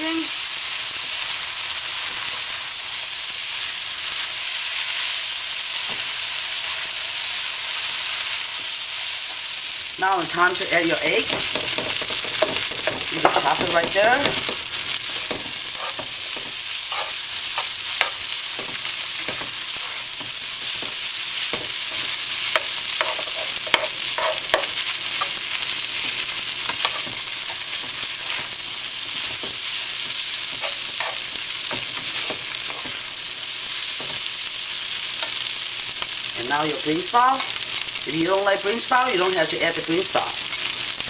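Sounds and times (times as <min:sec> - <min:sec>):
fried rice sizzling in a pan: 0:00.0 - 0:41.0
spatula scraping and tapping: 0:11.2 - 0:25.4, 0:26.0 - 0:33.0.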